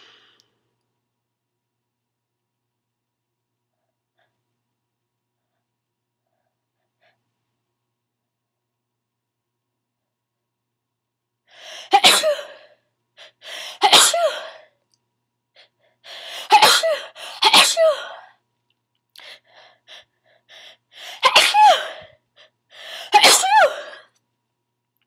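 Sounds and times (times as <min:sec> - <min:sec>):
person sneezing: 0:11.8 - 0:12.7, 0:13.7 - 0:14.6, 0:16.3 - 0:18.2, 0:21.1 - 0:22.1, 0:23.0 - 0:24.1.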